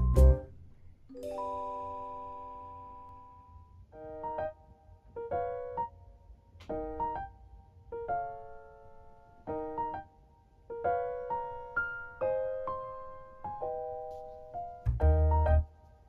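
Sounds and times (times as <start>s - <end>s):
lo-fi piano music: 0.0s - 16.0s.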